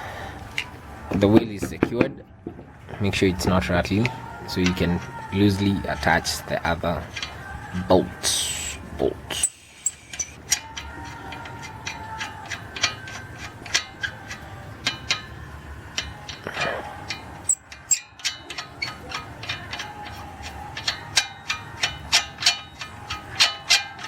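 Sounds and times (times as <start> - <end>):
wheel nuts clicking and ratcheting: 3.0 - 24.0.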